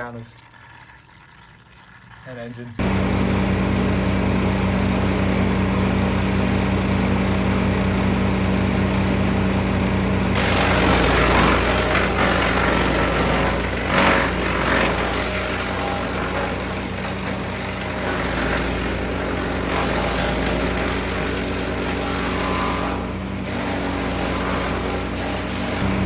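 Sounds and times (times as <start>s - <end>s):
small gasoline engine running: 2.8s - 26.0s
loud noisy chipping sound: 10.0s - 26.0s.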